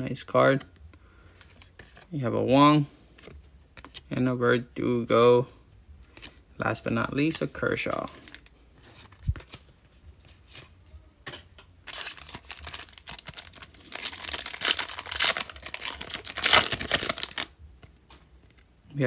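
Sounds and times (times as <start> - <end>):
wrapper tearing and crinkling: 11.9 - 17.5.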